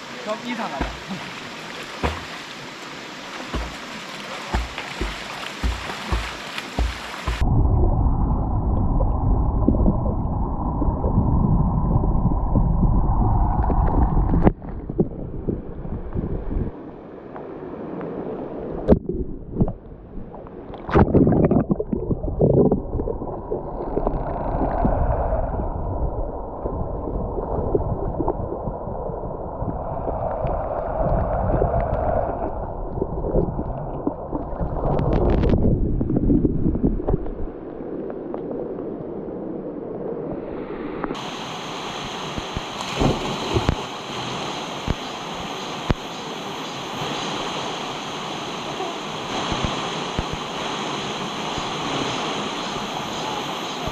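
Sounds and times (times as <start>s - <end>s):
stream water gurgling: 0.0s - 7.5s, 17.8s - 25.5s, 30.0s - 53.9s
sharp knocks: 0.8s - 1.2s, 2.0s - 2.5s, 3.5s - 7.4s.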